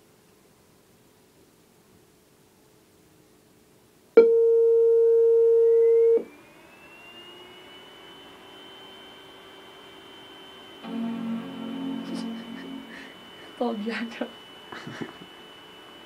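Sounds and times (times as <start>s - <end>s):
whine rising in pitch: 5.8s - 16.0s
low hum: 10.3s - 16.0s.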